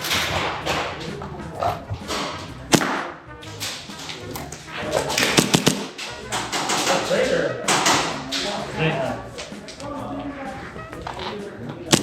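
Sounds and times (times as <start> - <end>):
background music: 0.0 - 12.0
airsoft gun shots: 2.7 - 3.2, 5.2 - 6.0.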